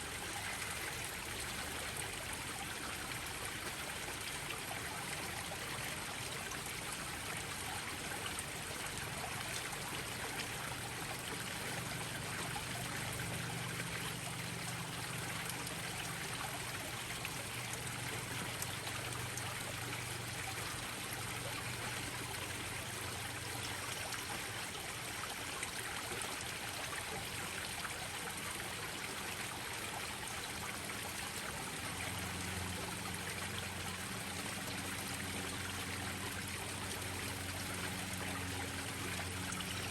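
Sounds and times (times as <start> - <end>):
small waterfalls splashing: 0.0 - 39.9.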